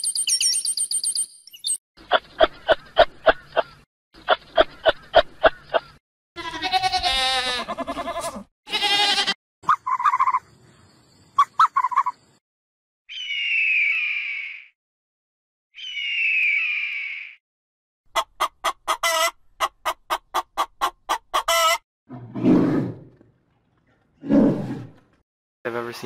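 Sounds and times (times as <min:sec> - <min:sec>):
high-pitched animal calls: 0:06.4 - 0:10.5, 0:11.4 - 0:12.2, 0:13.1 - 0:14.7, 0:15.8 - 0:17.4.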